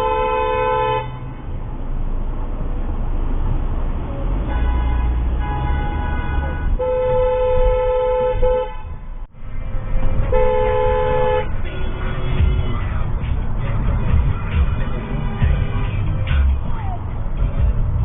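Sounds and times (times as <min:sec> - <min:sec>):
car horns honking: 0:00.0 - 0:01.5, 0:04.1 - 0:09.3, 0:09.9 - 0:16.6
road noise: 0:00.0 - 0:18.0.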